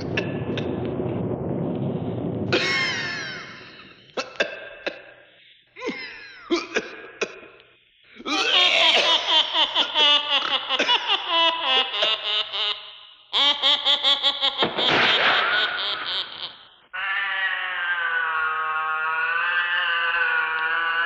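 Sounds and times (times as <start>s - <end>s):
recorded cackling laughter: 2.5s - 4.4s, 8.2s - 16.8s.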